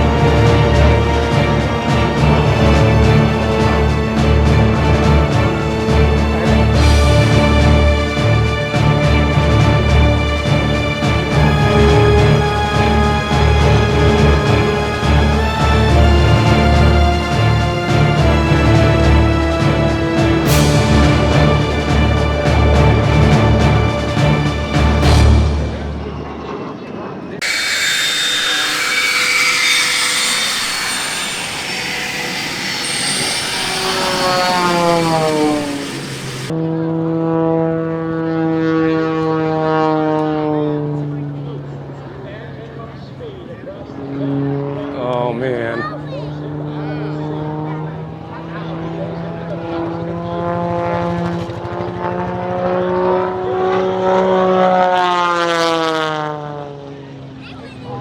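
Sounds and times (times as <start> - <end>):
jet passing with whine: 0.0 - 9.0, 9.8 - 22.0, 27.4 - 36.5
propeller plane engine droning: 0.0 - 58.0.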